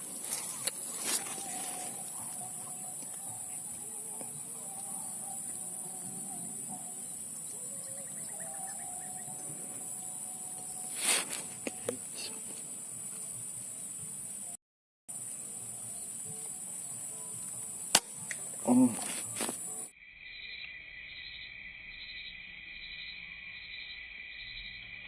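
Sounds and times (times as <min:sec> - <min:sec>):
insects chirring: 0:00.0 - 0:25.0
sharp crack: 0:17.9 - 0:18.4.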